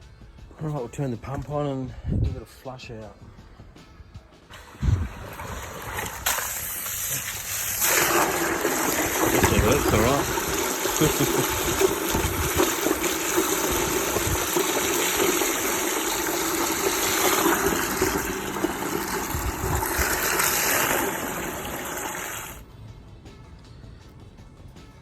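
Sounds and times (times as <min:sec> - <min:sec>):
electric water pump running: 0:04.5 - 0:22.6
water gushing and splashing: 0:04.5 - 0:22.6.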